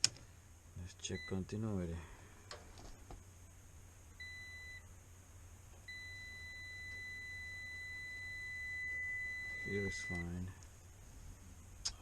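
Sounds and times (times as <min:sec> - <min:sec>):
multimeter continuity beep: 0:01.1 - 0:01.5, 0:04.2 - 0:04.9, 0:05.8 - 0:10.5.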